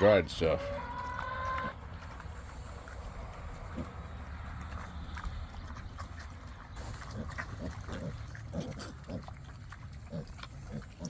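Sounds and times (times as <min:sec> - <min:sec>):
pigs grunting: 0:00.0 - 0:11.0.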